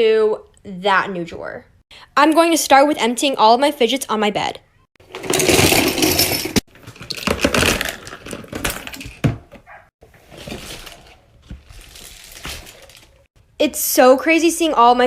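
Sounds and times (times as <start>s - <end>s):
plastic toys clattering and rattling: 5.0s - 13.3s
toys shuffling: 5.0s - 13.3s.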